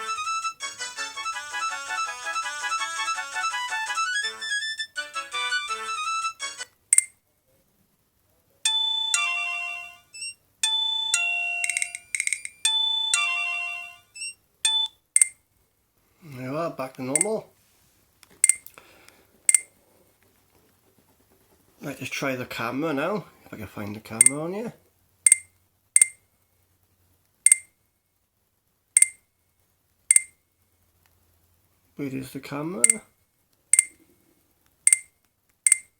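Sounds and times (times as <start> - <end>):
phone ringtone chiming: 8.7 - 15.3.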